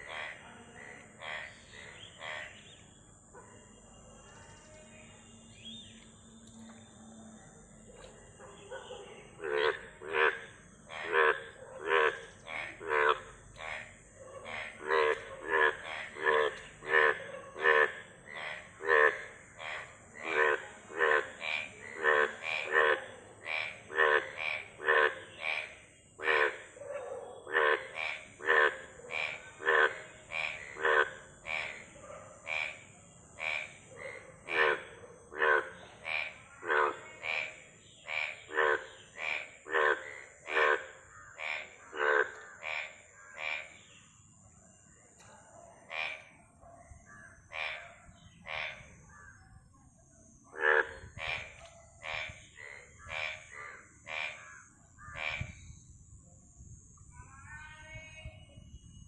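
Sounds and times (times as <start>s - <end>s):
frogs croaking: 0.0s - 59.0s.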